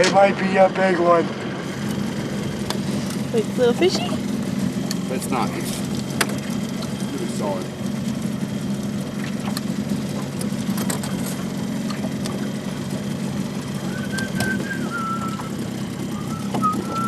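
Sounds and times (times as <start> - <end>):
boat motor idling: 0.0 - 17.0
high held whistling tone: 13.8 - 17.0.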